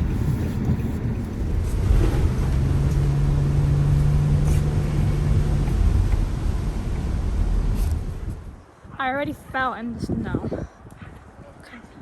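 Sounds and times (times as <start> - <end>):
vehicle engine rumble: 0.0 - 8.9.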